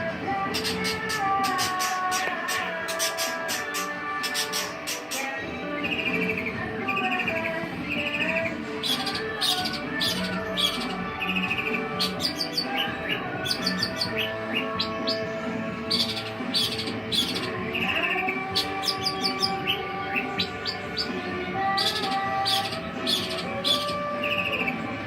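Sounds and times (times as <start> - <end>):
background music: 0.0 - 25.0
bird chirping and trilling: 0.3 - 25.0.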